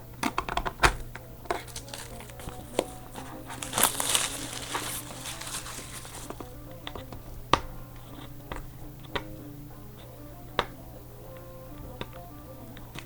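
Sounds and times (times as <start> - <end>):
plastic wrap crinkling: 1.1 - 7.1.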